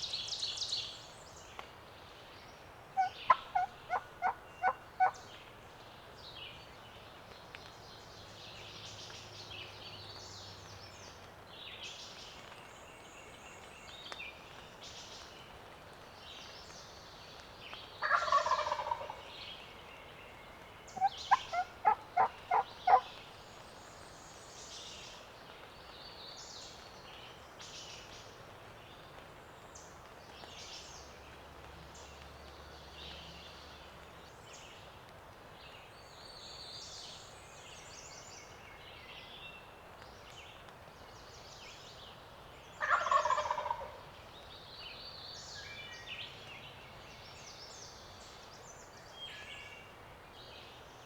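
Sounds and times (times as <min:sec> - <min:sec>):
faint songbirds singing: 0:00.0 - 0:51.0
turkey gobbling: 0:03.0 - 0:05.2, 0:18.0 - 0:19.2, 0:21.0 - 0:23.1, 0:42.8 - 0:44.0
turkey yelps: 0:03.0 - 0:05.2, 0:18.0 - 0:19.2, 0:21.0 - 0:23.1, 0:42.8 - 0:44.0.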